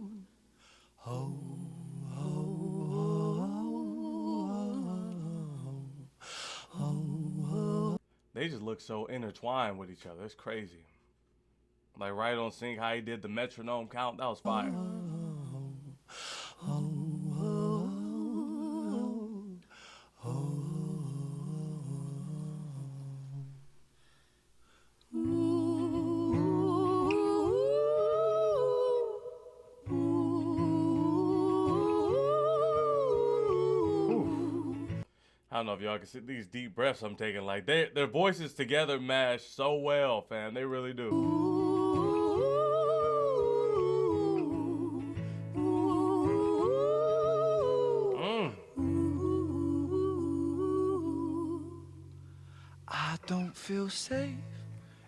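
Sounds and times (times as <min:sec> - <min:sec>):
voices humming in harmony: 0:25.2 - 0:35.0, 0:41.2 - 0:51.9.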